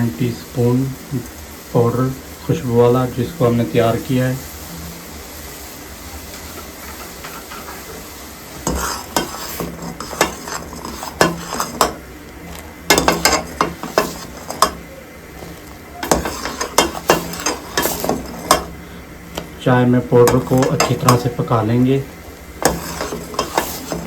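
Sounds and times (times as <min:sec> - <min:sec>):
milk tea boiling with hiss: 0:00.0 - 0:24.0
spoon stirring in pot: 0:06.4 - 0:21.5, 0:22.3 - 0:24.0.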